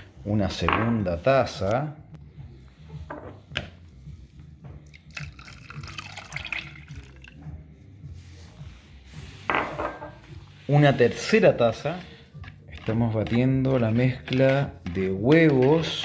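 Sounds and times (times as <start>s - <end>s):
milk pouring into a bowl: 4.8s - 7.4s.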